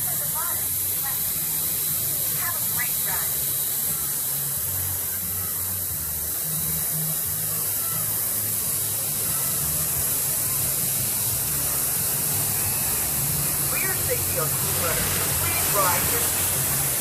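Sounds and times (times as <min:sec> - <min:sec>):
water rushing down a slide: 0:12.9 - 0:17.0.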